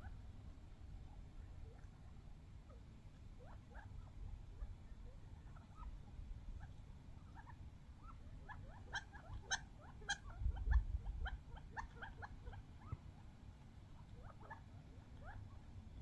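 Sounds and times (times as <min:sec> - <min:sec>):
quail chirping: 0:03.4 - 0:13.0, 0:14.0 - 0:15.7.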